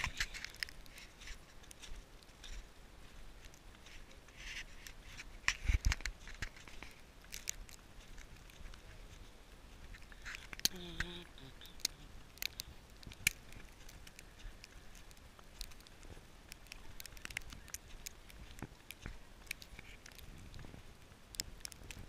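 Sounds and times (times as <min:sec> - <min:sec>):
footsteps crunching through snow: 0:00.0 - 0:10.6.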